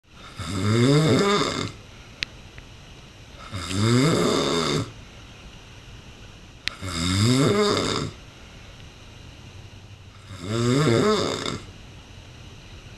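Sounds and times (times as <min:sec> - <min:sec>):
man snoring loudly: 0:00.2 - 0:01.8, 0:03.4 - 0:04.9, 0:06.7 - 0:08.2, 0:10.1 - 0:11.7.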